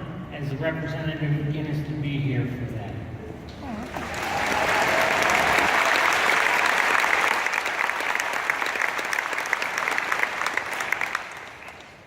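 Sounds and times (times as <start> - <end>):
large audience applauding: 3.8 - 12.0.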